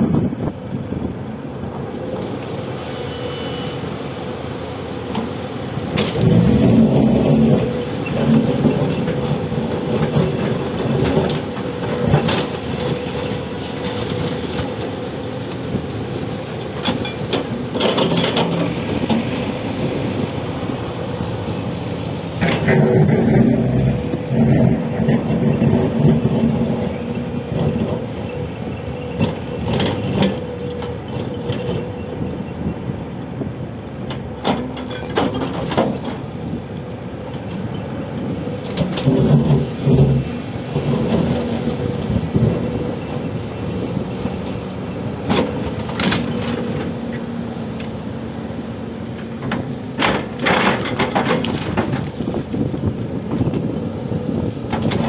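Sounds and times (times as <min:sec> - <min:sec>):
diesel engine working: 0:00.0 - 0:55.0
digging knocks and clatter: 0:49.2 - 0:53.7.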